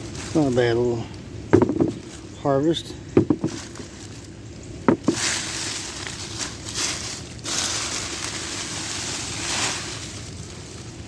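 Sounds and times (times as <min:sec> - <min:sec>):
hands rustling through leaf mulch: 0:00.0 - 0:01.0, 0:01.7 - 0:11.0
sharp knocks: 0:01.5 - 0:02.0, 0:03.2 - 0:03.6, 0:04.9 - 0:05.2.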